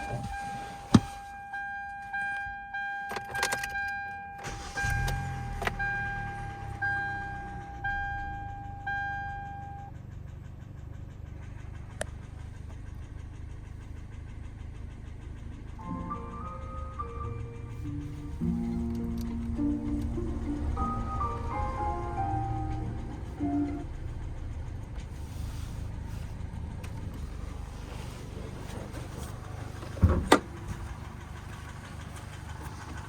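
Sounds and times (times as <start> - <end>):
dashboard warning chime: 0.0 - 9.9
car engine cranking and idling: 0.0 - 33.0.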